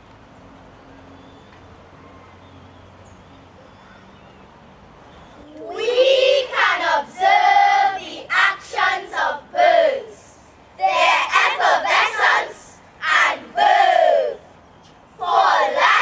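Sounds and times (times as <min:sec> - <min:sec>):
young voices calling in unison: 0:05.4 - 0:14.6, 0:15.2 - 0:16.0.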